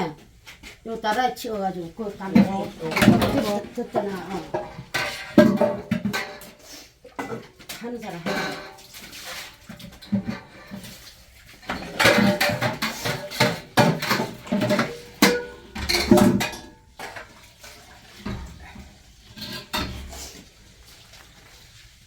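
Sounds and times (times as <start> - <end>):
metal pots and utensils clattering: 1.2 - 21.3.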